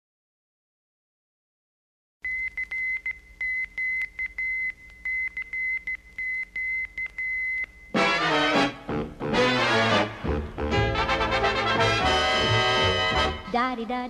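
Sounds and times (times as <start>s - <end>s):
morse code beeps: 2.2s - 8.0s
brass swing band: 8.0s - 13.5s.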